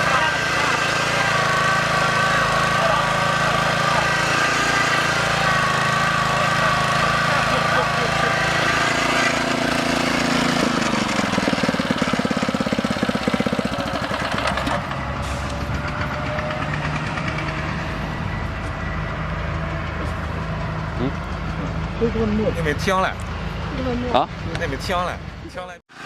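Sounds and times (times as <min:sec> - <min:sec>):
earth auger engine running: 0:00.0 - 0:23.4.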